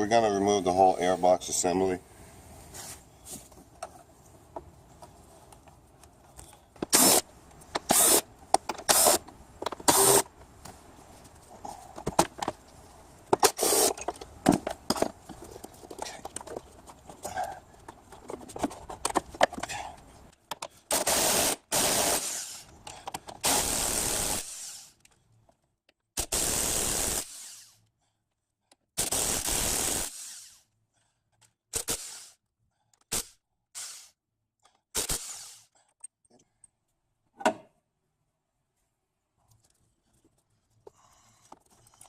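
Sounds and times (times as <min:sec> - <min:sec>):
power tool bursts: 0:06.9 - 0:07.2, 0:08.8 - 0:09.2, 0:09.9 - 0:10.3, 0:13.4 - 0:14.0, 0:20.9 - 0:22.6, 0:23.4 - 0:24.9, 0:26.2 - 0:27.8, 0:29.0 - 0:30.6
clatter of tools and parts: 0:13.3 - 0:20.8, 0:39.5 - 0:42.0.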